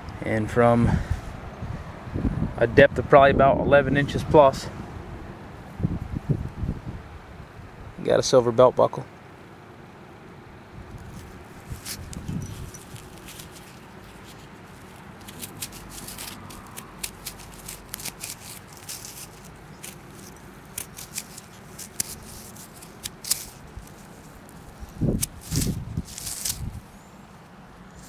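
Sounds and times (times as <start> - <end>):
handling clicks and scrapes: 10.9 - 26.9.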